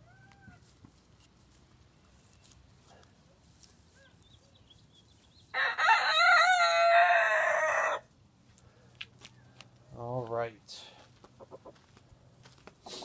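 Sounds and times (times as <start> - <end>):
rooster crowing: 5.6 - 8.0.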